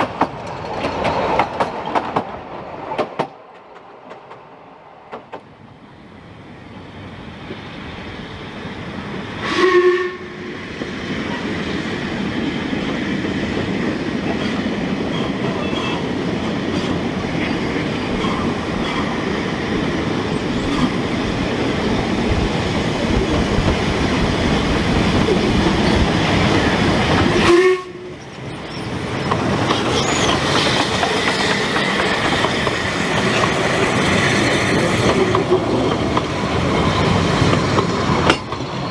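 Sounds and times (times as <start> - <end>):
train rumbling and clattering: 0.0 - 9.6, 10.2 - 38.9
train whistle toots: 9.4 - 10.6, 27.3 - 28.2.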